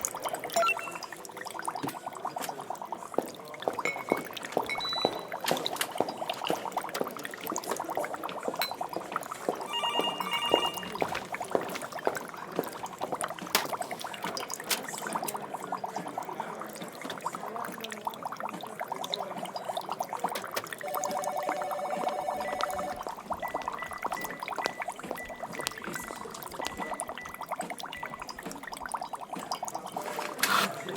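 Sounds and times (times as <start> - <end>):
liquid bubbling and pouring: 0.0 - 30.9
warbling two-tone electronic signal: 0.5 - 1.2, 9.7 - 11.1, 20.8 - 25.8
trilling electronic beep: 0.6 - 1.2, 9.7 - 11.0.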